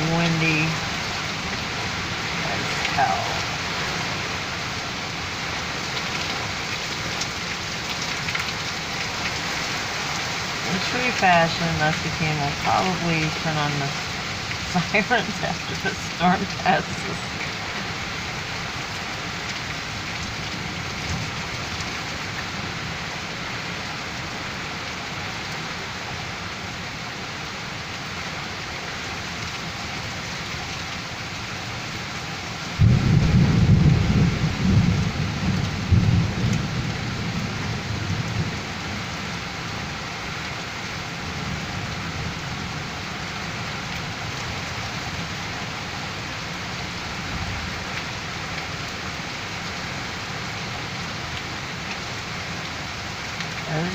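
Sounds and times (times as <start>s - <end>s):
heavy rain falling: 0.0s - 53.9s
thunder clap rumbling: 32.8s - 39.0s.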